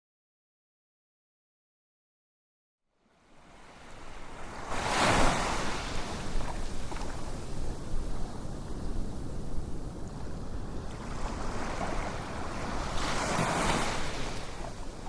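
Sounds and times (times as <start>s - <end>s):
wind rumble on microphone: 3.4s - 15.0s
ocean wave washing in: 3.9s - 7.0s, 10.7s - 15.0s.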